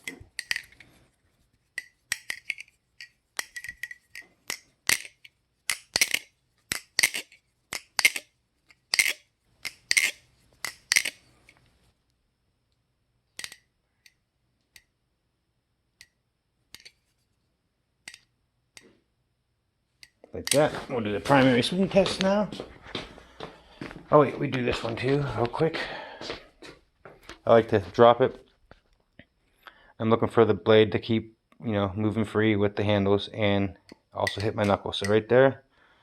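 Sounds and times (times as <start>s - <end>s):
butterfly knife clacking: 0.0s - 0.8s, 1.8s - 11.3s, 33.9s - 35.2s.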